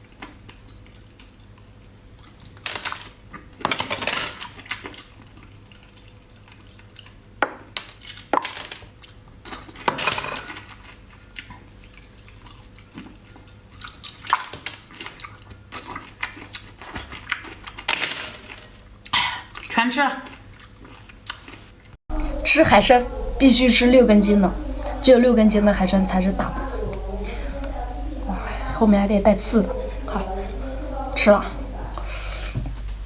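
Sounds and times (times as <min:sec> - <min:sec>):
wet eating noises: 0:00.0 - 0:22.0
utensils clattering against dishes: 0:02.6 - 0:04.6, 0:09.5 - 0:10.8.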